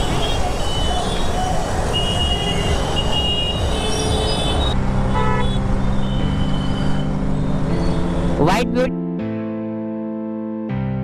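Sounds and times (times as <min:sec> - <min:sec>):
engine and road rumble: 0:00.0 - 0:08.8
horn toots: 0:01.9 - 0:06.9.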